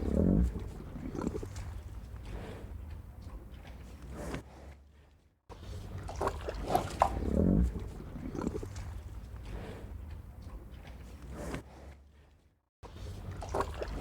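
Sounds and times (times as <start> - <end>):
cow chewing and tearing grass: 13.0 - 14.0.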